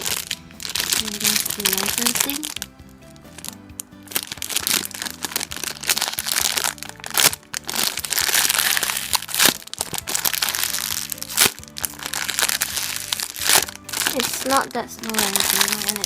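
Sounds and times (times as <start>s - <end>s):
plastic packaging crinkling: 0.0s - 16.0s
quiet background music: 0.0s - 16.0s.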